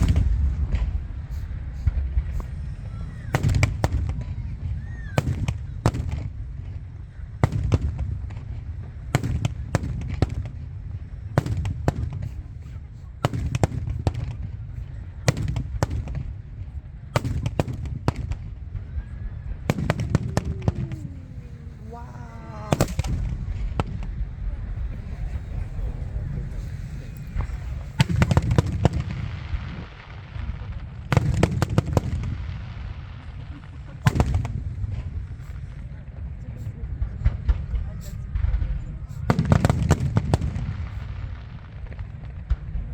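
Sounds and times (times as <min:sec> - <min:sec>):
crowd murmur: 0:00.0 - 0:42.9
fireworks bangs: 0:00.0 - 0:42.9
low rumble: 0:14.0 - 0:39.0.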